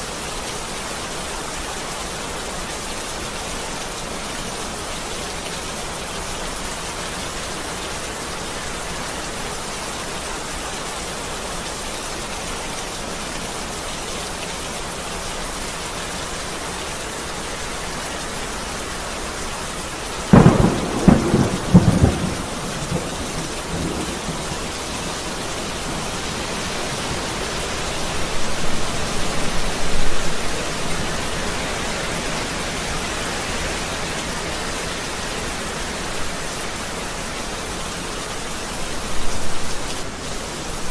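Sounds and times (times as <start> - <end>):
heavy rain: 0.0 - 40.9
thunder rumbling: 20.3 - 28.9.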